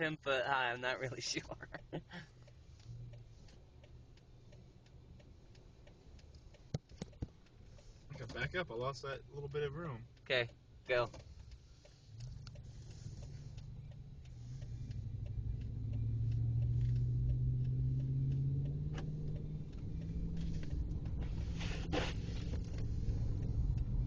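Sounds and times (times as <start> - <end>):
light ticks: 0.0 - 21.5, 22.2 - 24.0
car engine revving: 9.2 - 24.0.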